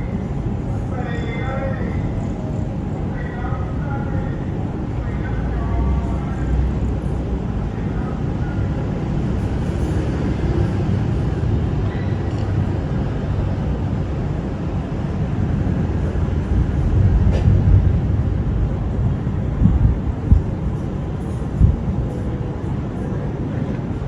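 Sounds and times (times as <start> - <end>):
thunderstorm rumble: 8.6 - 22.9.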